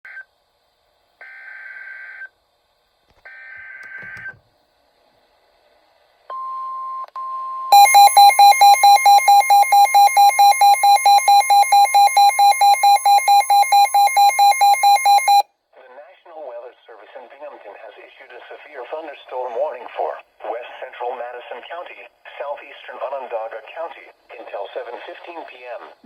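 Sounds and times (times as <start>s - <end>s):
steady beep: 7.7s - 15.4s
screechy digital data bursts: 7.8s - 15.4s.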